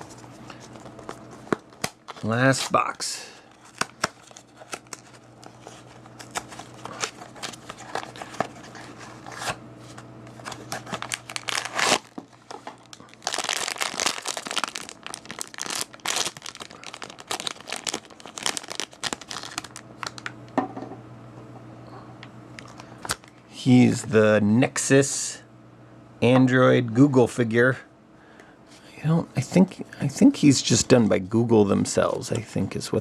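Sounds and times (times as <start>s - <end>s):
wrapping crinkling and tearing: 0.0s - 20.3s, 22.6s - 23.4s.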